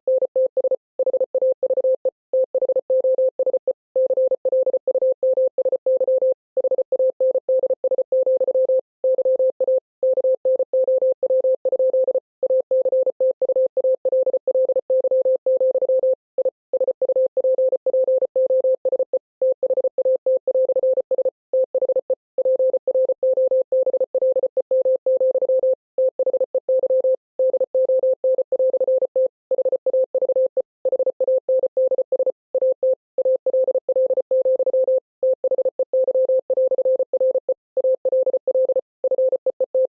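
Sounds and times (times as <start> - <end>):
morse code beeps: 0.1 - 39.9.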